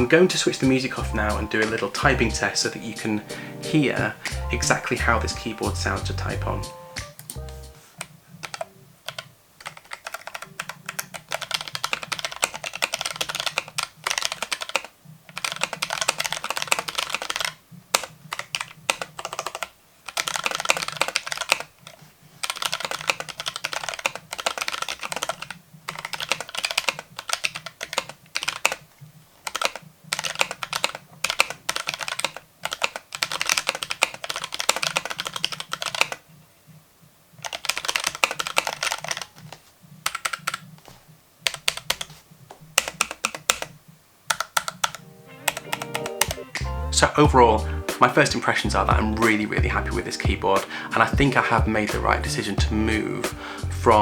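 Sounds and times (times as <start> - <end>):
fast typing on keyboard: 0.0 - 36.2, 37.4 - 46.4, 47.5 - 54.0.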